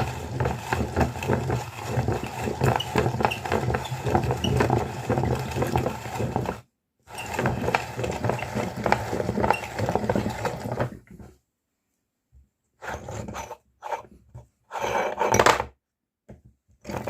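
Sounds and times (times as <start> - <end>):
meat grinder motor hum: 0.0 - 11.0.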